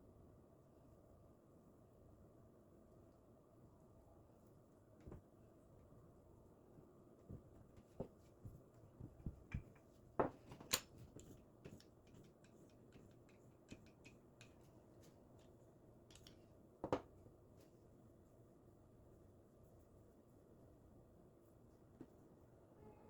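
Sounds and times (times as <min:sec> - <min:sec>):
clicks and taps of handling: 0:07.3 - 0:17.2.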